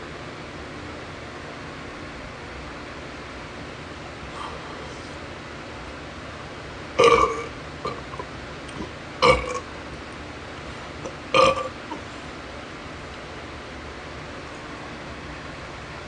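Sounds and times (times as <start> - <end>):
person burping: 7.0 - 8.2, 8.8 - 9.6, 11.1 - 12.0.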